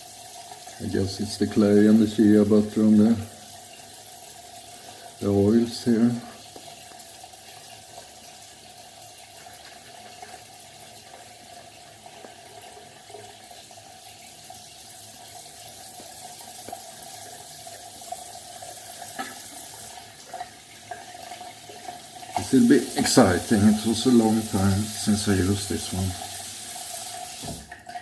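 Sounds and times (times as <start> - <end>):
tap running into sink: 27.2 - 28.0.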